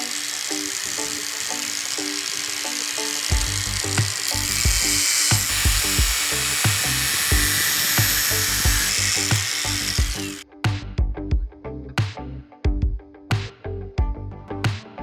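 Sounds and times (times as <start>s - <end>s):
high-pitched motor whirring: 0.0s - 10.4s
music with steady beat: 3.3s - 15.0s.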